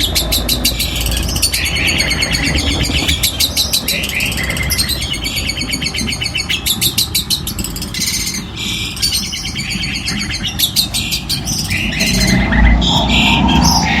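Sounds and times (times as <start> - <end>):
bird singing harsh rapid notes: 0.0 - 14.0
low rumble: 11.2 - 14.0.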